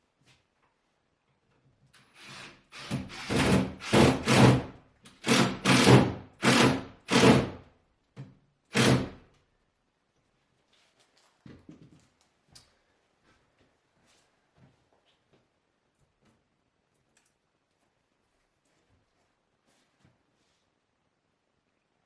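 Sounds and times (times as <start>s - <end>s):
power drill drilling into stone: 2.2s - 4.6s, 5.2s - 7.5s, 8.7s - 9.1s.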